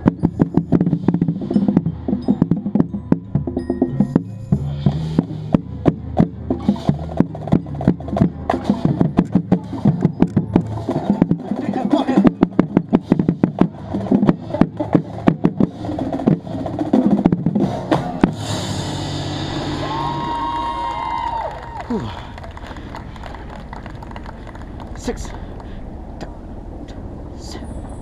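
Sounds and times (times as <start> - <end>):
bass drum notes: 0.0 - 21.8
drumline strikes: 0.0 - 21.8
marching band playing: 0.0 - 21.8
crowd cheering: 19.4 - 25.0.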